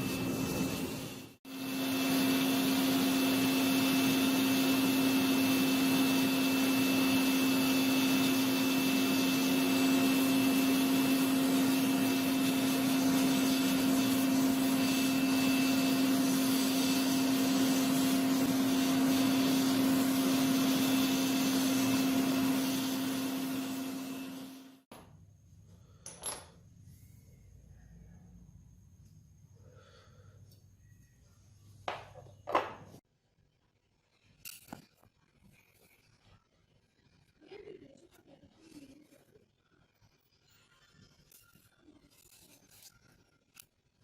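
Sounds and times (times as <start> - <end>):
electric power tool running: 0.0 - 24.9.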